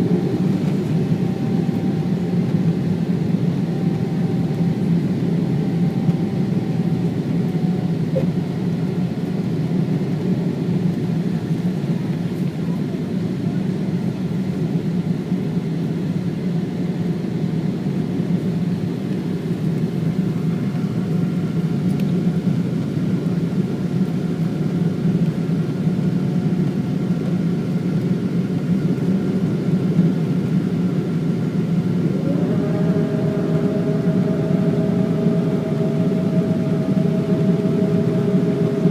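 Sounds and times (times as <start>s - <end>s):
faint whine: 0.0s - 13.6s, 29.5s - 38.9s
airplane cabin engine rumble: 0.0s - 38.9s.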